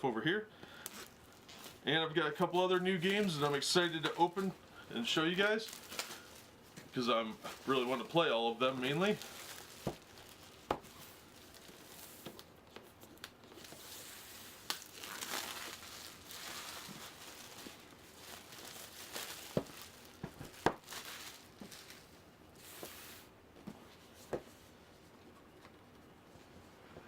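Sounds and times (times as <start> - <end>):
shrink-wrap tearing and crinkling: 5.1 - 22.1.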